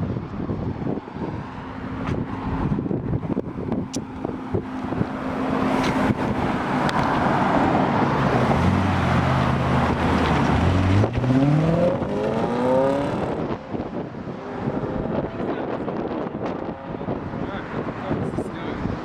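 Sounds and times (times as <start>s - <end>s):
wind noise: 0.0s - 19.0s
car engine accelerating: 0.9s - 17.9s.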